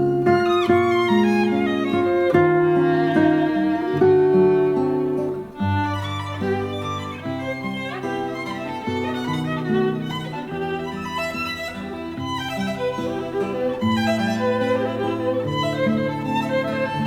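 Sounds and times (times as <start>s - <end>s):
violin and strings music: 0.0s - 17.0s.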